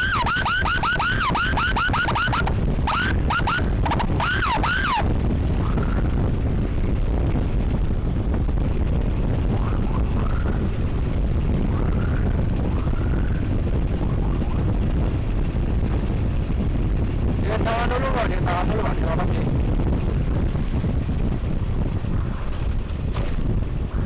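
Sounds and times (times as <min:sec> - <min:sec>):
electronic siren yelping: 0:00.0 - 0:06.0
motorcycle engine rumble: 0:00.0 - 0:24.0
wind on microphone: 0:00.0 - 0:24.0.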